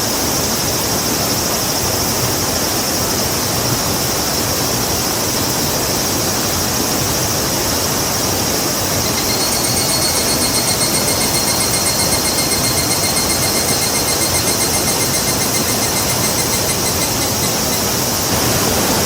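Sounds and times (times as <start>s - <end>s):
high rapidly pulsing call: 9.0s - 18.3s.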